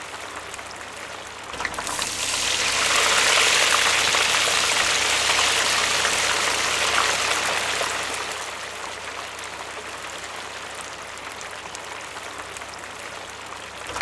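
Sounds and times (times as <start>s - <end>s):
curry sizzling in a pan: 0.3s - 10.8s.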